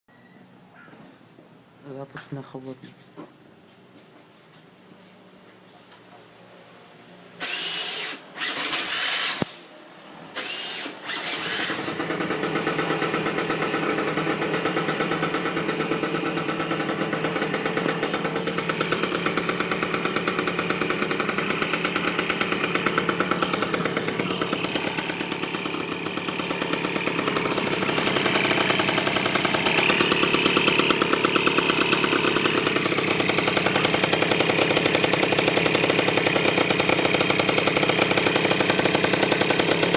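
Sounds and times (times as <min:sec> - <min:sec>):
scooter engine cranking: 0:07.4 - 0:09.6, 0:10.3 - 0:39.9
scooter engine idling: 0:10.3 - 0:39.9.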